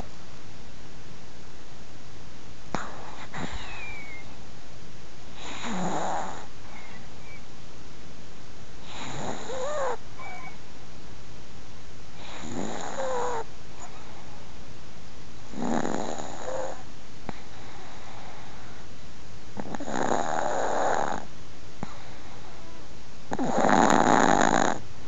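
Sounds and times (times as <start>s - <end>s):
dog snoring: 2.7s - 4.2s, 5.3s - 7.4s, 8.8s - 10.6s, 12.2s - 14.2s, 15.5s - 18.8s, 19.6s - 24.8s
thin squeaky whistle: 3.6s - 4.3s.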